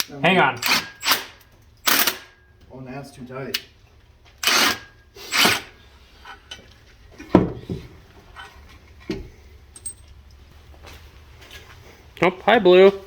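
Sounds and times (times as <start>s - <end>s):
hand tools and metal clanking: 0.0s - 2.7s, 3.5s - 10.6s.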